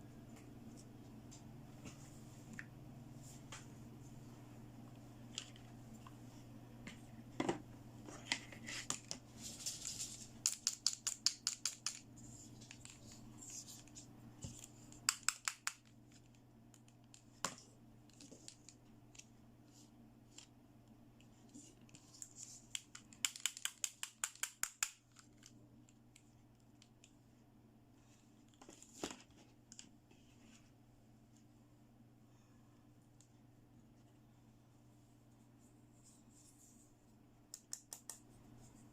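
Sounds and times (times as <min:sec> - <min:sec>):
rapid small clicks: 0:22.1 - 0:27.2.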